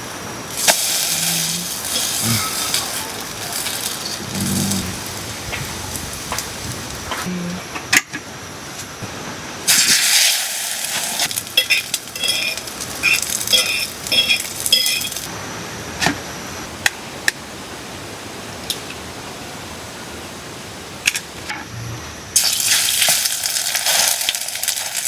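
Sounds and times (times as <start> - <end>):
dishes and cutlery clinking: 11.6 - 15.2.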